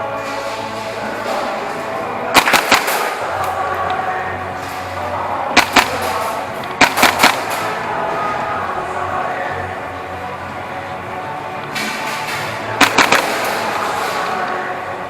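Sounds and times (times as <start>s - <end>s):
background music: 0.0s - 15.0s
airsoft guns firing: 1.0s - 8.6s, 11.8s - 14.7s.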